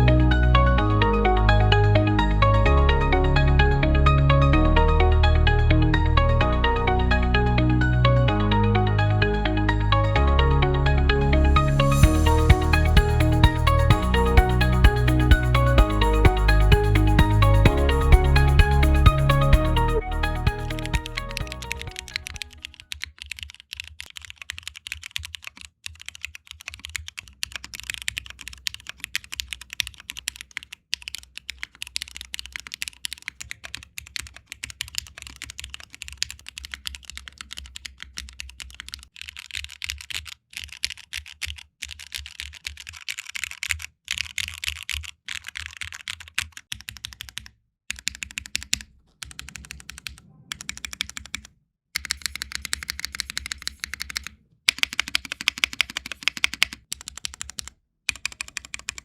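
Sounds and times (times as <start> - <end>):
fast mechanical keyboard typing: 12.0 - 59.0.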